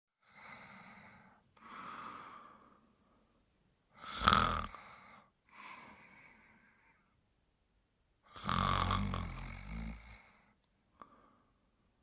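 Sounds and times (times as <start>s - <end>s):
person snoring: 4.0s - 5.2s, 8.3s - 10.5s.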